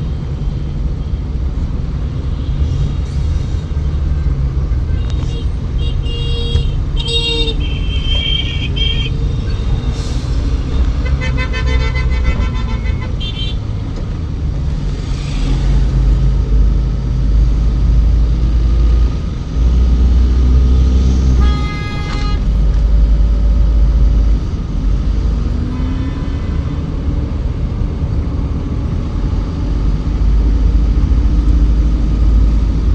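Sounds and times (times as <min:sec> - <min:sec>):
minibus engine rumbling: 0:00.0 - 0:32.9
car horns honking: 0:04.9 - 0:09.8, 0:10.9 - 0:13.6, 0:21.4 - 0:22.5.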